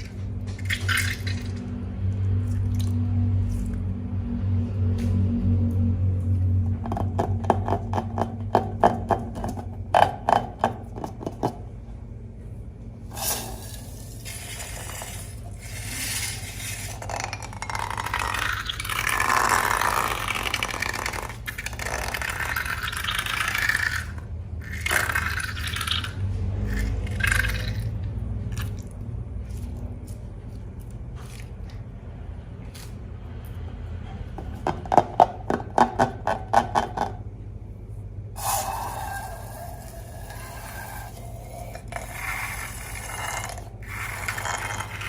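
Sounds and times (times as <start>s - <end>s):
slime scraping and squishing: 13.1s - 31.9s, 39.4s - 45.0s.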